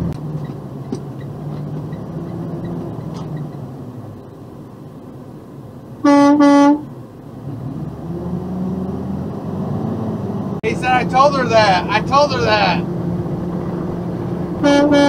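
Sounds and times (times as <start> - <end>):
road noise: 0.0 - 15.0
truck air horn blasts: 6.0 - 6.9, 14.6 - 15.0.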